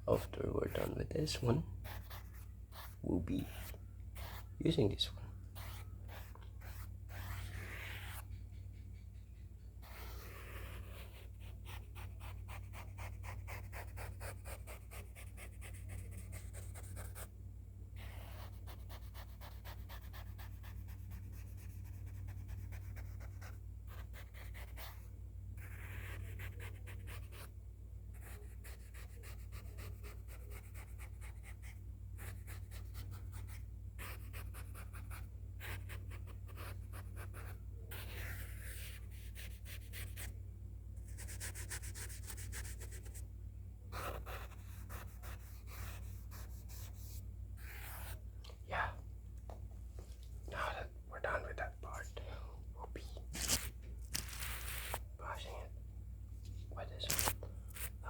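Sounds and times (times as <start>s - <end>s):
steady low hum: 0.0s - 58.0s
sketching tool scratching: 0.1s - 17.3s, 18.0s - 27.5s, 41.1s - 43.2s, 43.9s - 48.2s, 53.3s - 55.0s, 56.9s - 57.9s.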